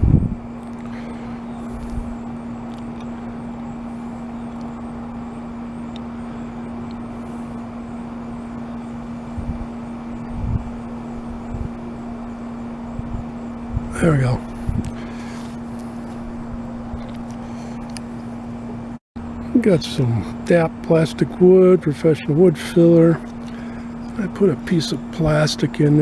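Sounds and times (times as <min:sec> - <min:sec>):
steady machine hum: 0:00.0 - 0:26.0.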